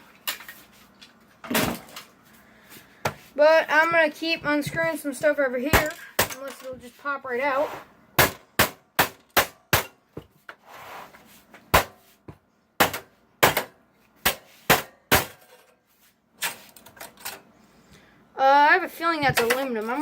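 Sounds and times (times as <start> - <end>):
metal scrape: 7.4 - 7.9, 10.6 - 11.4.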